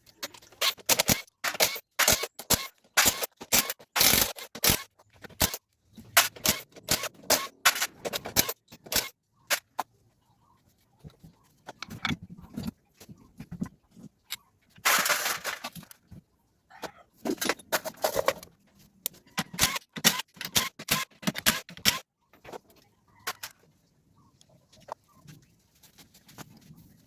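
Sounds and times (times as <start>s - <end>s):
tools and metal parts handled: 0.0s - 9.8s, 11.0s - 23.6s.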